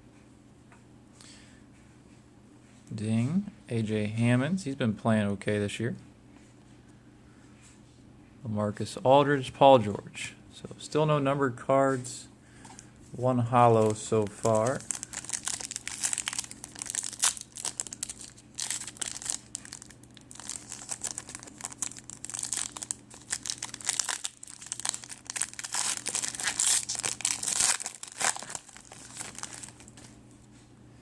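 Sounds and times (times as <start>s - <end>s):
plastic wrapper crinkling and tearing: 13.8s - 30.1s.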